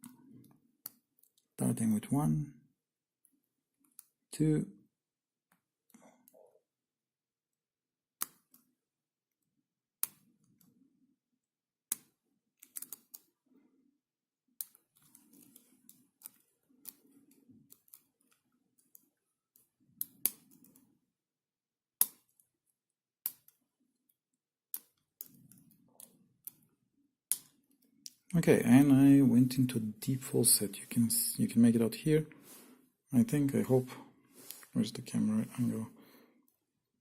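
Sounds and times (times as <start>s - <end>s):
faint scraping and handling: 14.8s - 19.2s, 32.3s - 33.0s, 33.6s - 36.0s.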